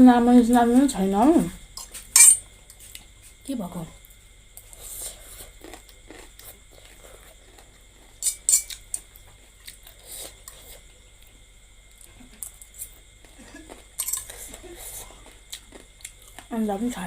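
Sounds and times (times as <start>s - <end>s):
quiet chewing: 4.0s - 16.5s.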